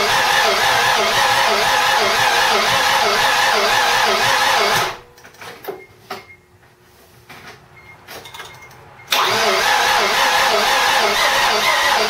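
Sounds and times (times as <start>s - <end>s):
engine cranked by starter: 0.0s - 5.0s, 9.1s - 12.0s.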